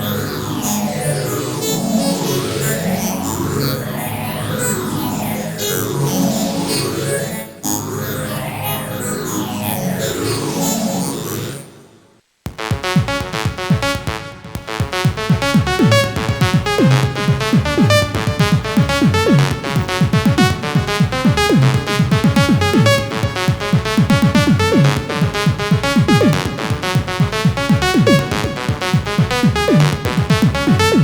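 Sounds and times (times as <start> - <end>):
chiptune music with steady beat: 12.5 - 31.0.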